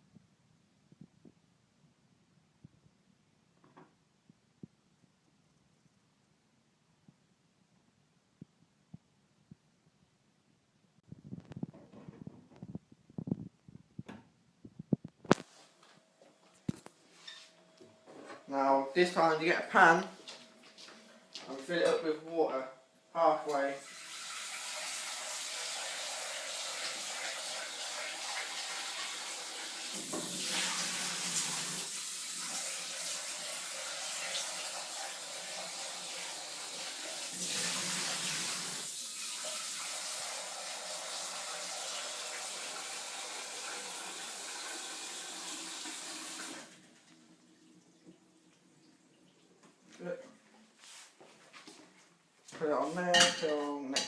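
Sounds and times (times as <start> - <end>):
tap water filling a pan: 23.5 - 48.8.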